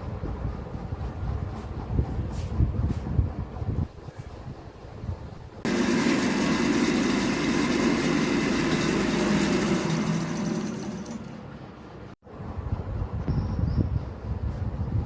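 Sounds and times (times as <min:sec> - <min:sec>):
mechanical whirring: 0:05.7 - 0:11.5.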